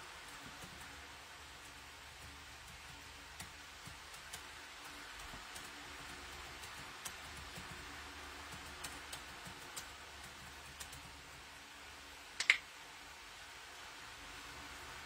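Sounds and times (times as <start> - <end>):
faint room hiss: 0.0 - 15.0
keyboard and mouse clicks: 12.4 - 12.6.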